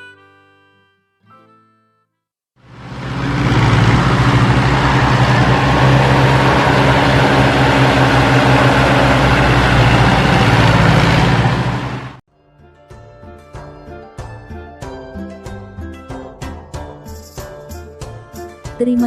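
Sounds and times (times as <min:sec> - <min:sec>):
vehicle engine running: 0:02.6 - 0:12.2.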